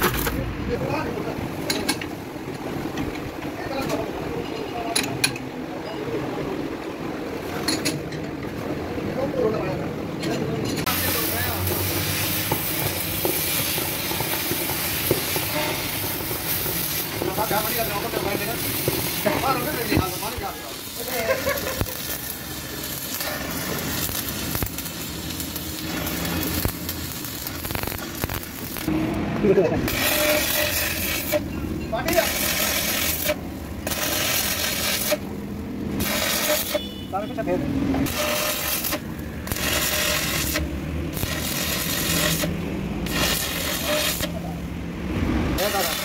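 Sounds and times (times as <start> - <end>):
arc welding crackling hiss: 10.9 - 29.0, 29.8 - 37.4, 38.0 - 44.7, 45.5 - 46.0
harsh rasping strokes on metal: 29.9 - 31.5, 32.1 - 35.2, 38.1 - 40.6, 41.2 - 44.4.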